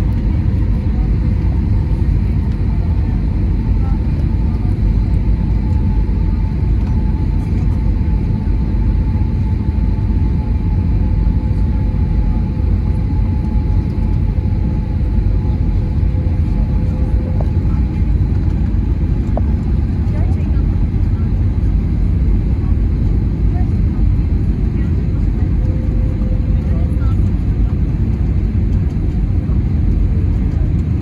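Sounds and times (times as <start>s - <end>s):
airplane engines rumbling in cabin: 0.0s - 31.0s.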